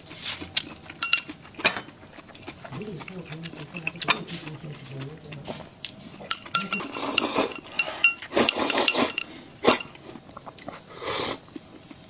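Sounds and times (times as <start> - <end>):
mouth eating noise: 0.0 - 12.0
cutlery clinking on dishes: 0.6 - 2.0, 3.0 - 4.7, 6.2 - 10.0.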